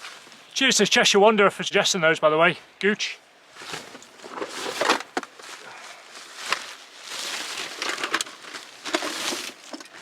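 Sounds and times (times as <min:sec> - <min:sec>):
gear rustling in a rucksack: 0:03.6 - 0:10.0
items knocking and clicking: 0:07.7 - 0:10.0.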